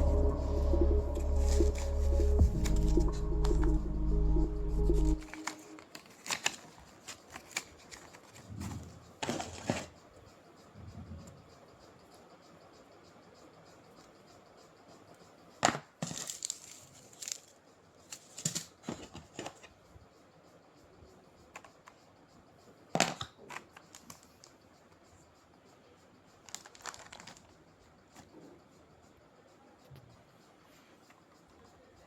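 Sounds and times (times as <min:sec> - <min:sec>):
packaging rustling: 0:05.1 - 0:08.4, 0:26.5 - 0:27.5.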